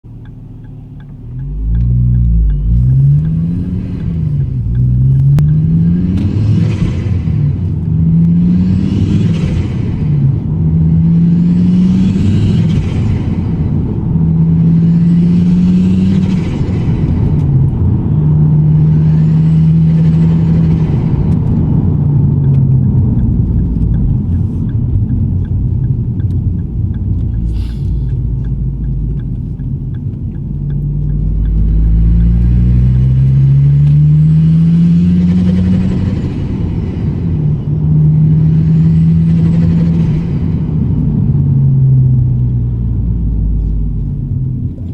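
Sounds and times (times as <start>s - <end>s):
car engine revving: 0.0s - 44.9s.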